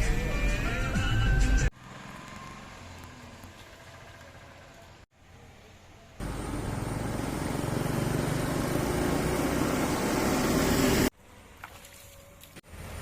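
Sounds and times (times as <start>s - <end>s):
background traffic: 0.3s - 13.0s
road vehicle rushing: 1.3s - 11.1s.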